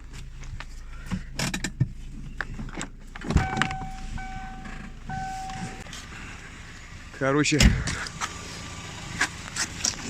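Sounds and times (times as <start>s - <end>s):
steering squeaking: 0.4s - 6.3s.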